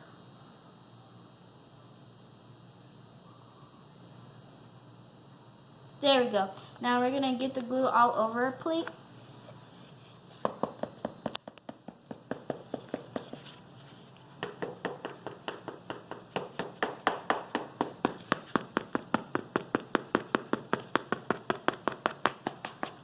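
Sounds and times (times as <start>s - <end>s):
rapid even tapping: 10.4s - 13.5s, 14.4s - 23.0s.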